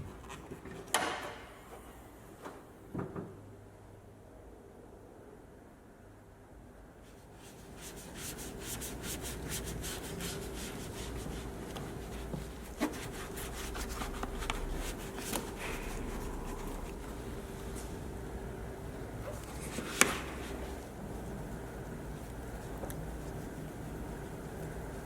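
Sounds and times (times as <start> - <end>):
faint steady hum: 0.0 - 25.0
scrubbing strokes on car surface: 7.1 - 25.0.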